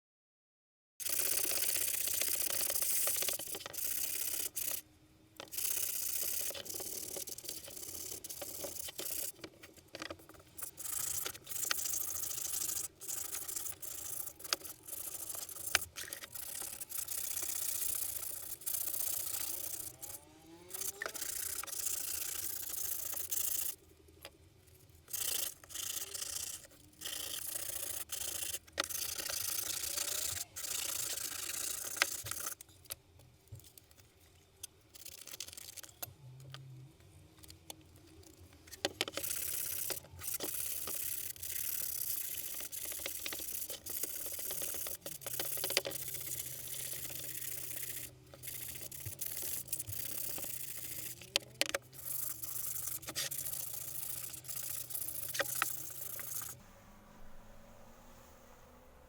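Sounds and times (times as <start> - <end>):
scratchy rubbing noise: 5.4 - 20.2, 38.7 - 56.6.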